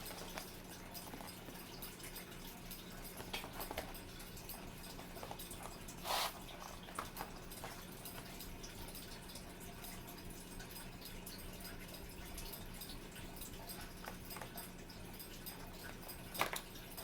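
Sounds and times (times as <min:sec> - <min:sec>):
packaging taps and rustles: 0:00.0 - 0:01.9, 0:03.1 - 0:04.1, 0:04.9 - 0:08.4, 0:15.8 - 0:16.8
faint steady hum: 0:00.0 - 0:17.0.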